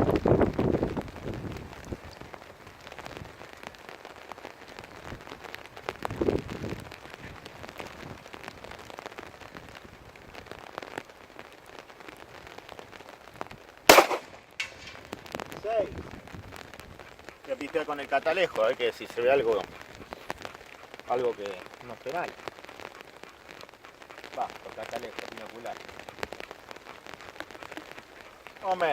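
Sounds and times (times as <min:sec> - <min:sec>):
wind gusts on microphone: 0:00.0 - 0:03.5, 0:04.8 - 0:10.7, 0:14.8 - 0:21.1
steady rain: 0:00.0 - 0:28.9
pistol shot: 0:13.9 - 0:14.9.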